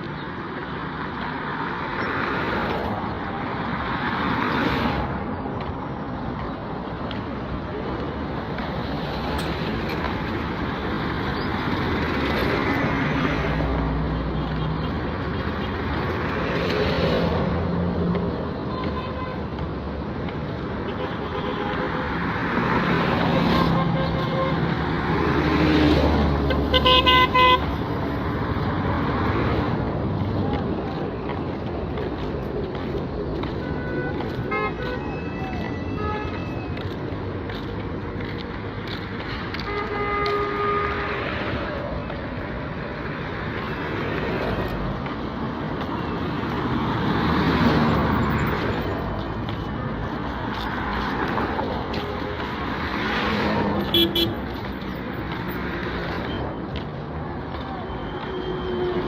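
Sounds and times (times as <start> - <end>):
road traffic passing: 0.0 - 59.0
vehicle horn toots: 26.5 - 27.6, 53.9 - 54.4.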